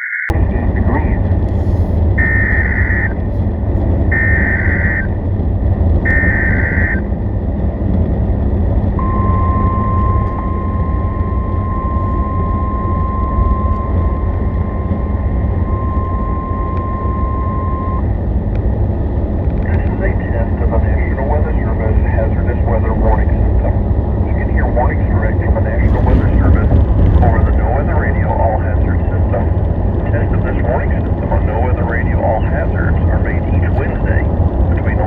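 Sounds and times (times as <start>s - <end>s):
warbling data tones: 0.0s - 7.3s, 9.0s - 18.3s, 19.6s - 35.0s
hiss and low rumble: 0.3s - 35.0s
steady alert tone: 0.8s - 3.4s, 4.0s - 5.2s, 6.0s - 7.0s, 9.0s - 18.1s.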